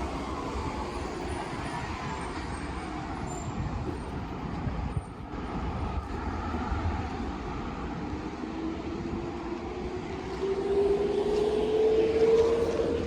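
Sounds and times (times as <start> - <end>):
road traffic passing: 0.0 - 13.0.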